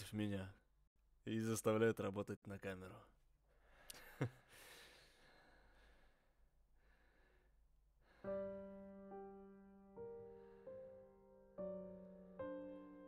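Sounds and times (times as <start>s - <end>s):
soft breathing: 3.5s - 8.7s
piano chord: 8.3s - 13.0s.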